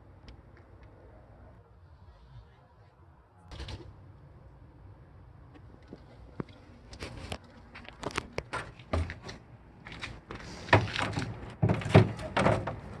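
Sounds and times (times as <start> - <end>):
hard objects knocking and clunking: 10.7 - 13.0.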